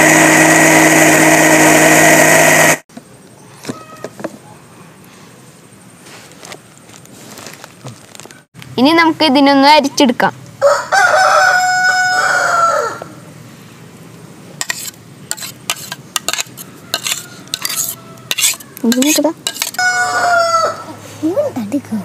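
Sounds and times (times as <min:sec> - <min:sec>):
rooster crowing: 0:10.6 - 0:13.3, 0:16.6 - 0:18.8, 0:19.7 - 0:21.0
spoon scraping in a strainer: 0:14.6 - 0:19.8.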